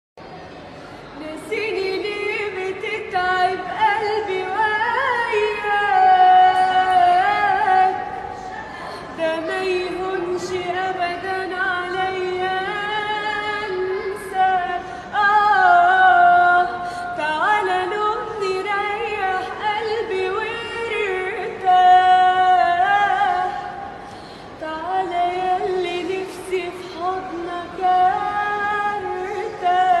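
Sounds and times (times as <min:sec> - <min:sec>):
woman singing: 0:01.2 - 0:08.4, 0:09.2 - 0:23.9, 0:24.6 - 0:30.0.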